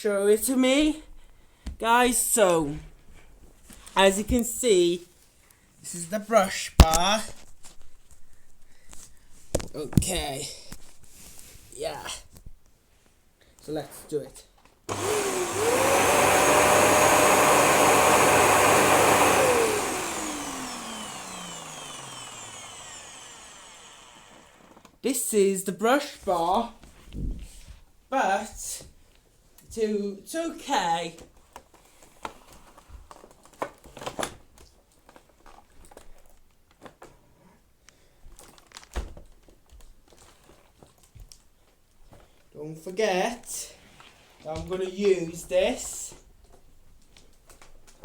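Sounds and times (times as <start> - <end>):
vacuum cleaner motor whining: 14.9 - 24.9.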